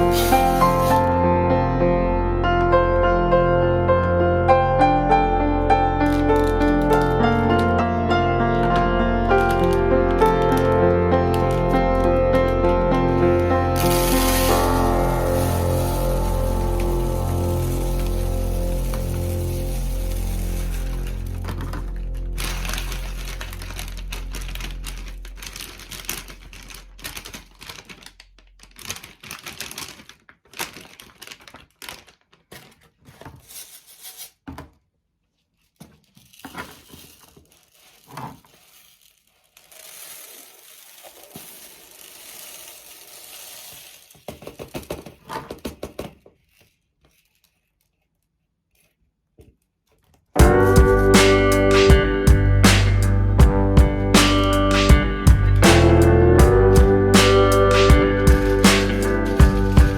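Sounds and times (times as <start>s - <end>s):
packaging crinkling: 0.0s - 1.2s, 6.0s - 34.3s, 35.6s - 45.4s, 46.2s - 49.1s
background music: 0.0s - 26.2s, 50.4s - 59.9s.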